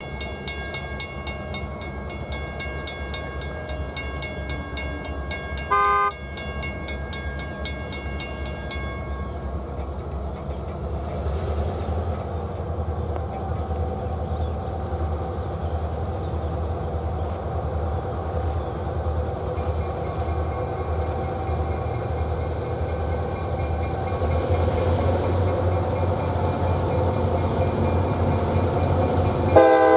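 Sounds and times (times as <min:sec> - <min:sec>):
locomotive bell ringing: 0:00.0 - 0:11.0, 0:19.1 - 0:29.9
train horn toot: 0:05.6 - 0:06.2, 0:29.5 - 0:29.9.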